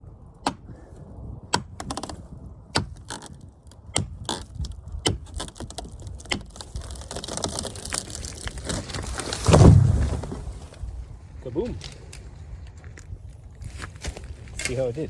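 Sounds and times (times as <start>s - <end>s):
sharp wooden cracks: 0.4s - 0.9s, 1.5s - 10.9s
faint wood crackles: 1.5s - 15.0s.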